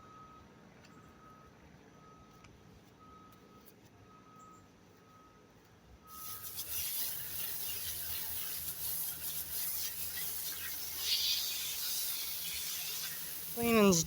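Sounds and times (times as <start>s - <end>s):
reversing vehicle beeps: 0.0s - 6.6s
water spray hissing: 6.2s - 14.0s.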